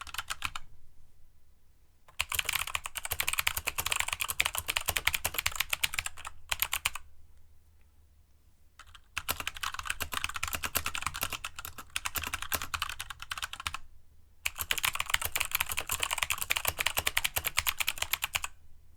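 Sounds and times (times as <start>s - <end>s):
fast typing on mechanical keyboard: 0.0s - 0.6s, 2.2s - 7.0s, 8.8s - 13.8s, 14.5s - 18.6s.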